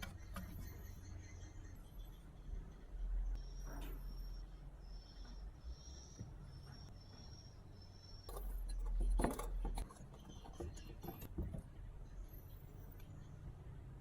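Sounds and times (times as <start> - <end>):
rubbing and clattering: 8.3 - 11.7
small hard parts clicking and knocking: 8.3 - 11.7.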